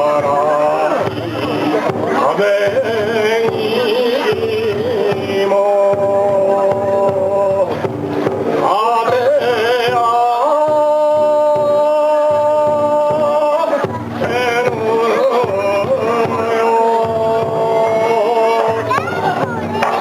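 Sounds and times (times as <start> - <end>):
person singing long notes: 0.0 - 7.9, 8.5 - 19.0
music: 0.0 - 20.0.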